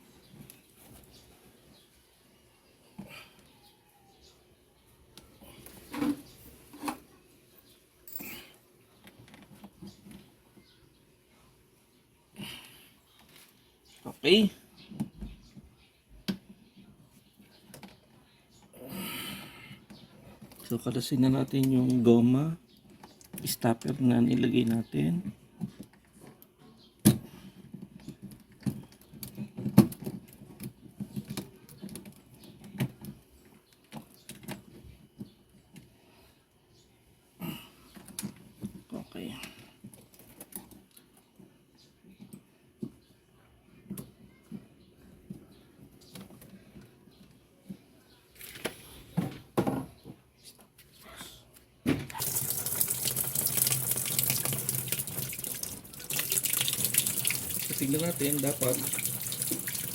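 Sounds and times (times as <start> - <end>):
water rushing into washing machine: 52.1 - 59.9.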